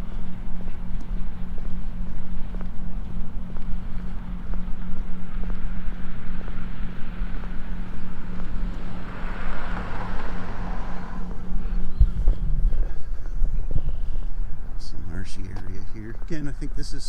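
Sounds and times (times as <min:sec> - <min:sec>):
steady low hum: 0:00.0 - 0:17.0
car passing: 0:03.3 - 0:13.2.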